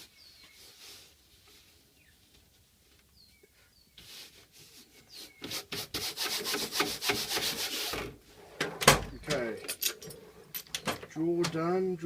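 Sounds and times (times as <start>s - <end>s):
rubbing and scraping glue off: 3.9s - 8.2s.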